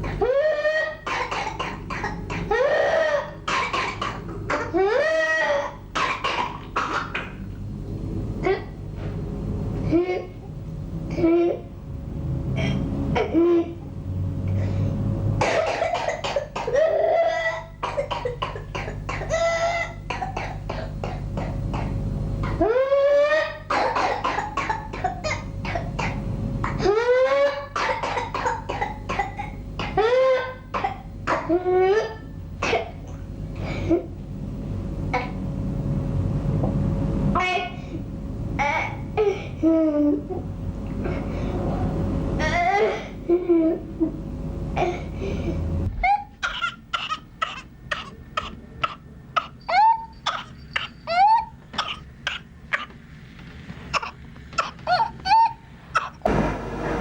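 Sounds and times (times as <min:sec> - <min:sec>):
child coughing: 0:00.0 - 0:07.4, 0:08.4 - 0:08.8, 0:15.4 - 0:22.7, 0:23.4 - 0:34.1, 0:35.1 - 0:35.4, 0:37.4 - 0:38.0, 0:38.6 - 0:40.3, 0:42.4 - 0:44.1, 0:44.8 - 0:45.2, 0:45.9 - 0:53.0, 0:53.9 - 0:56.3
short rapid coughs: 0:15.4 - 0:22.6, 0:44.8 - 0:51.1, 0:51.7 - 0:53.0.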